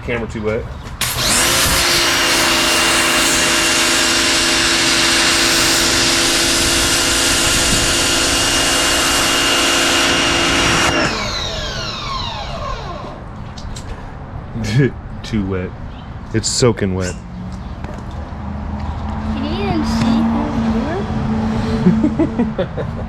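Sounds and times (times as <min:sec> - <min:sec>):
pressure washer spray hissing: 0:01.0 - 0:10.8
pressure washer motor whine: 0:01.0 - 0:13.4.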